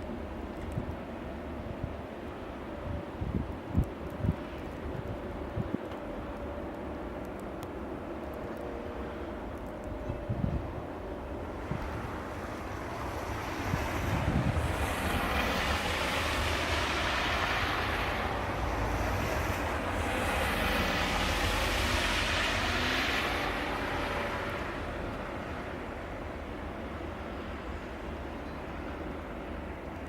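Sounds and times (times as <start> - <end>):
wind rumble on microphone: 0.1 - 25.9
tyres hissing on slush: 11.7 - 25.5.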